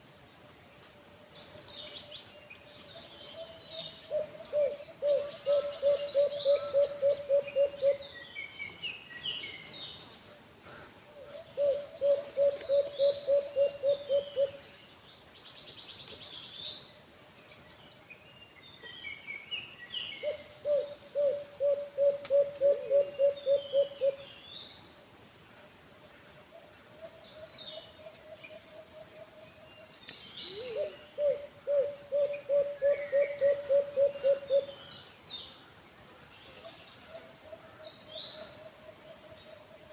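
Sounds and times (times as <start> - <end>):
dove hooting: 4.1 - 8.0, 11.2 - 14.6, 20.2 - 24.2, 30.4 - 34.7.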